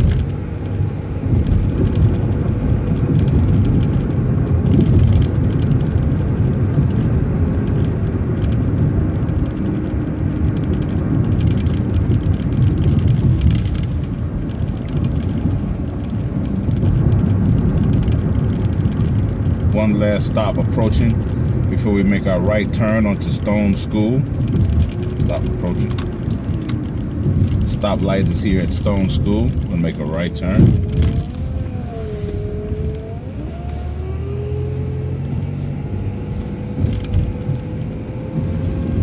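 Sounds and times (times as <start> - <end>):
bus engine and road rumble: 0.0 - 39.0
rattles and clicks from bus body: 0.0 - 39.0.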